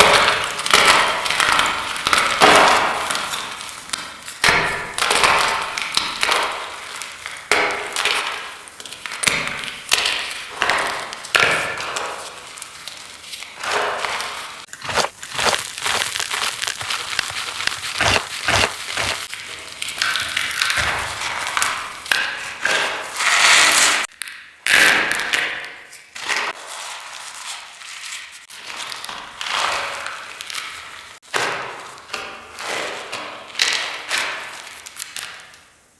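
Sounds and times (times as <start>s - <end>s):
chalk crunching in hand: 14.0s - 19.3s.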